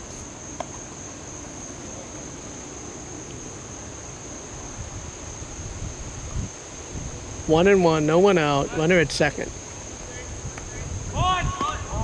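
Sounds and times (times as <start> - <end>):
insects droning: 0.0 - 12.0
wind rumble: 4.6 - 12.0
distant background noise: 6.6 - 12.0.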